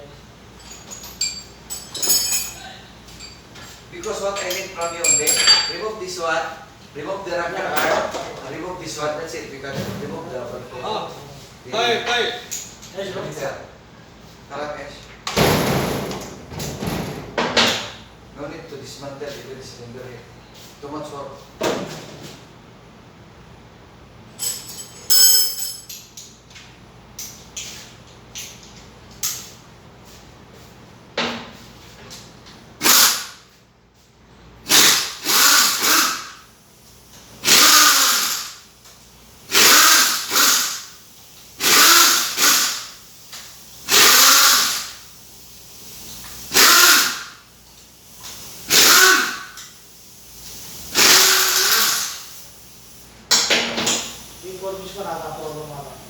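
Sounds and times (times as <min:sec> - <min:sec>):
power tool bursts: 0:32.8 - 0:33.4, 0:34.6 - 0:36.4, 0:37.4 - 0:38.6, 0:39.5 - 0:41.0, 0:41.6 - 0:43.0, 0:43.8 - 0:45.0, 0:46.5 - 0:47.4, 0:48.6 - 0:49.6, 0:50.9 - 0:52.3.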